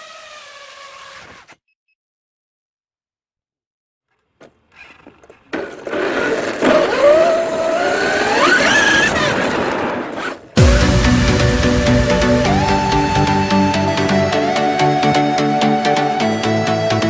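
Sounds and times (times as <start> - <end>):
rc car motor whining: 0.0 - 1.5, 4.7 - 10.4
steady rushing noise: 10.6 - 14.4.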